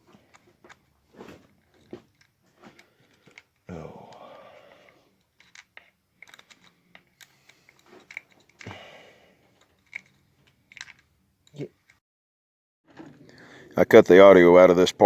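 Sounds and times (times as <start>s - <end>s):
small metal parts clicking: 0.3s - 4.2s, 4.8s - 8.8s, 9.5s - 12.0s
short vocal sound: 3.7s - 4.9s.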